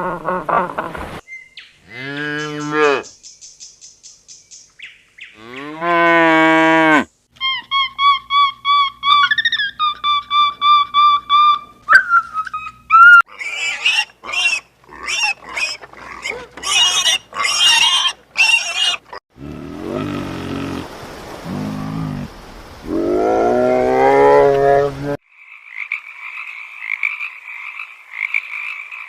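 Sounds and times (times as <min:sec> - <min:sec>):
shrill animal squeals: 0:07.4 - 0:19.0
low rising animal calls: 0:17.9 - 0:25.2.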